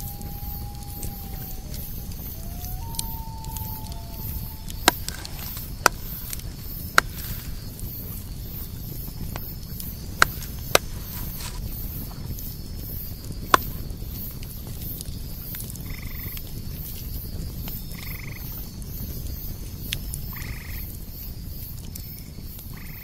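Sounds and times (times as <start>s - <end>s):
steady low rumble: 0.0s - 14.2s.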